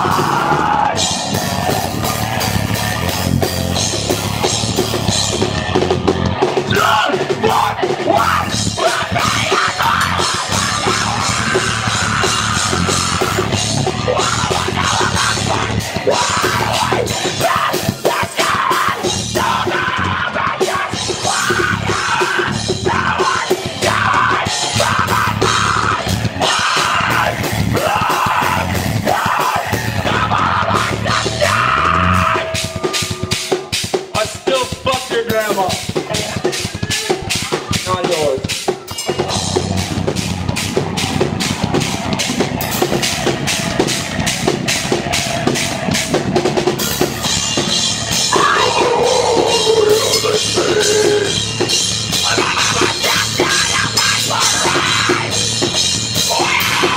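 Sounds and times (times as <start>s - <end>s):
person yelling vocals: 0.0s - 1.0s, 6.7s - 32.6s, 48.3s - 51.4s, 52.1s - 55.4s, 56.2s - 56.9s
drum kit: 0.0s - 56.9s
heavy rock band playing: 0.0s - 56.9s.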